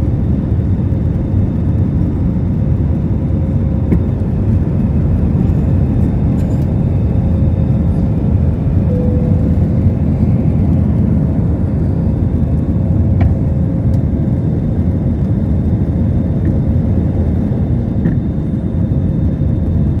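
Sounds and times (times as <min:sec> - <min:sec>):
jet engines and airflow rumble: 0:00.0 - 0:20.0
faint steady hum: 0:01.0 - 0:20.0.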